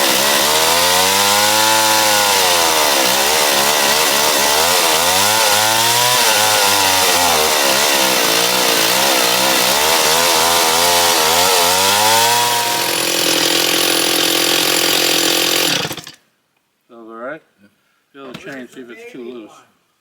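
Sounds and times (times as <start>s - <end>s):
chainsaw engine revving: 0.0s - 16.2s.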